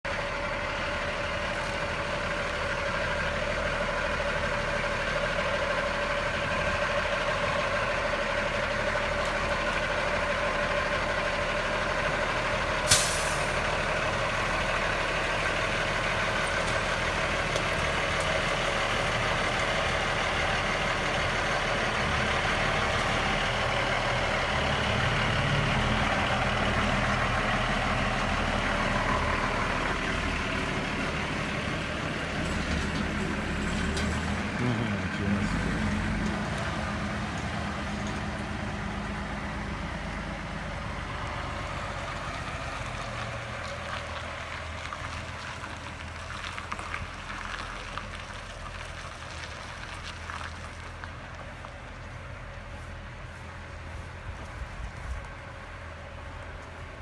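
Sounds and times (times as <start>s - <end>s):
heavy truck engine running: 0.0s - 57.0s
air brake hiss: 12.9s - 13.6s.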